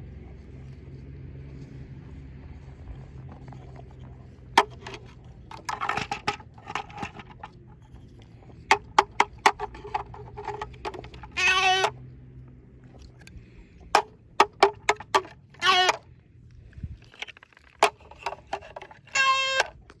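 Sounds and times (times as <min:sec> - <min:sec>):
sharp clicks and knocks: 0:03.1 - 0:12.0, 0:12.9 - 0:16.1, 0:17.1 - 0:20.0.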